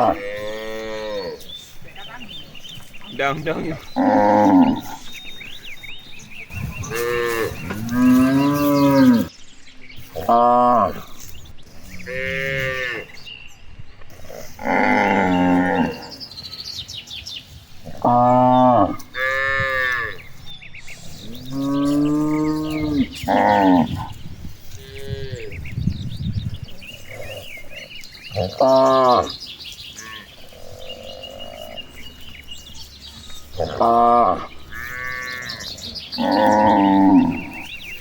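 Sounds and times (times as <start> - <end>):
cattle mooing: 0.0 - 1.6, 3.1 - 5.2, 6.5 - 9.3, 11.8 - 13.2, 14.4 - 16.2, 21.2 - 25.6, 27.0 - 29.4, 30.0 - 38.0.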